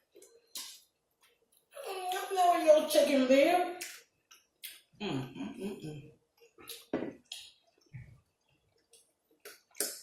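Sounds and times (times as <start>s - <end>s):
mouth smacks while chewing: 8.8s - 10.0s.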